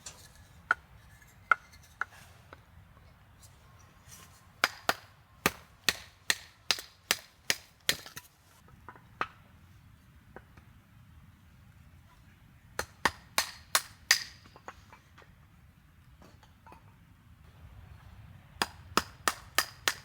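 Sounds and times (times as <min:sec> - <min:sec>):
firewood being chopped: 0:04.6 - 0:08.3, 0:12.8 - 0:14.6, 0:18.6 - 0:20.0.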